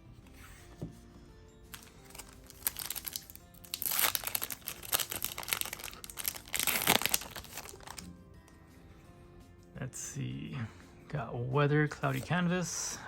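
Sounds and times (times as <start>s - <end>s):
quiet background music: 0.0s - 13.0s
foil pack crinkling and tearing: 1.7s - 8.1s.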